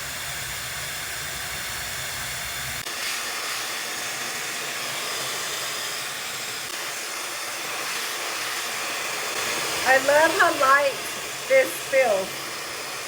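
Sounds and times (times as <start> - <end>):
hair dryer blowing: 0.0 - 13.0.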